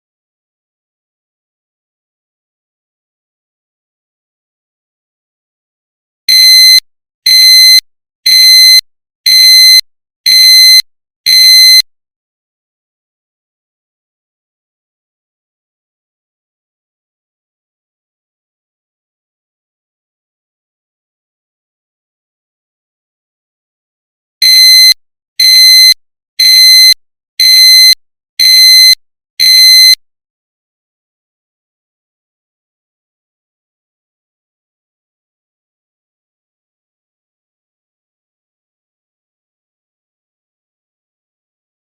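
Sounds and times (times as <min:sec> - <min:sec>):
seatbelt reminder beeps: 0:06.3 - 0:11.8, 0:24.4 - 0:30.0.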